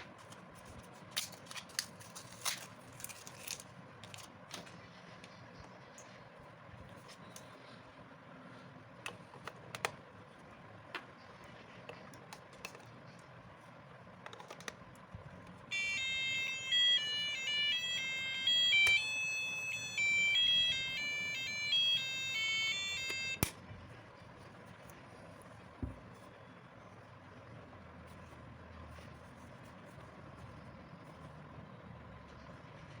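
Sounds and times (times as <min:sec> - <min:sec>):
alarm clock beeping tune: 0:15.7 - 0:23.4.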